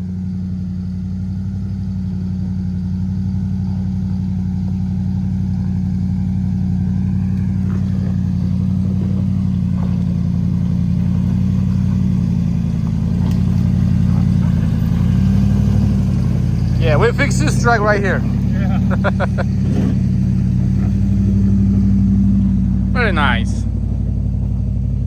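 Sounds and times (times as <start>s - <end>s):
off-road vehicle engine under load: 0.0s - 25.0s.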